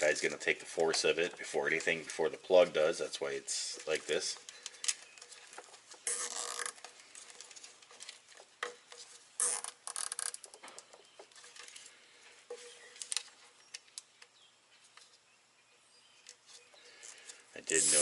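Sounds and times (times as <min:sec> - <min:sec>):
scratchy rustling: 0:16.4 - 0:18.0.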